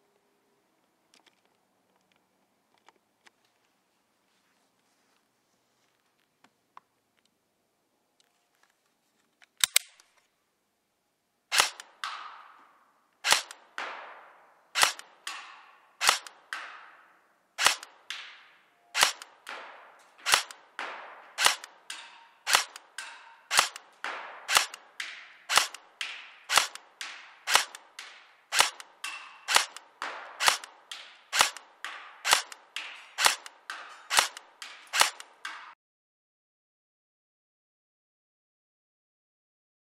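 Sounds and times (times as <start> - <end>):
airsoft gun shots: 11.5 - 35.8.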